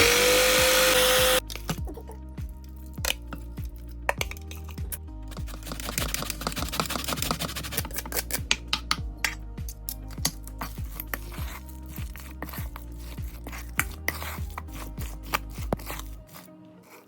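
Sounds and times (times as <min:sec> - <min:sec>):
background music with bass: 0:00.0 - 0:16.8.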